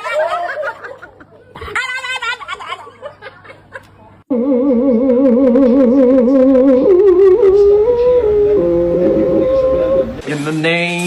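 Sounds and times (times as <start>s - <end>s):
dog howling: 4.4s - 10.2s.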